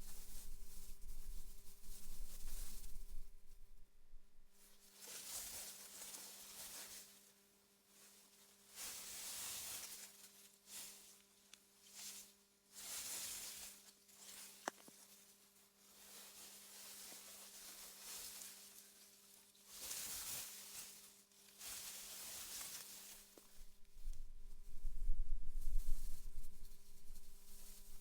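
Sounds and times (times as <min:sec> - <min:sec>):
wind rustling through grass: 0:00.0 - 0:04.8, 0:22.9 - 0:28.0
low rumble: 0:23.8 - 0:28.0.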